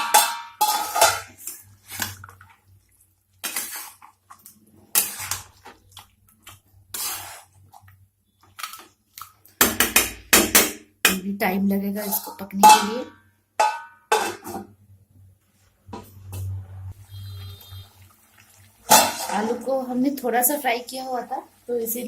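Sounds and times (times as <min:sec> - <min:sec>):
spoon scraping cooking pot: 0:03.4 - 0:05.8, 0:06.4 - 0:07.9.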